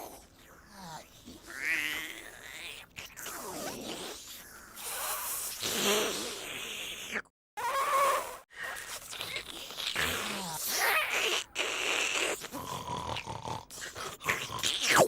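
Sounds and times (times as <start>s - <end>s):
cartoon sucking and snuffling noises: 3.2s - 15.0s.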